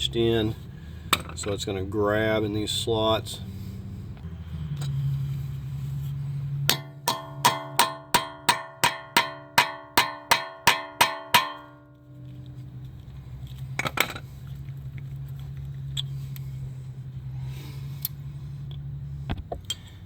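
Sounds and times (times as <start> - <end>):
hammer striking metal punch: 6.7 - 12.1.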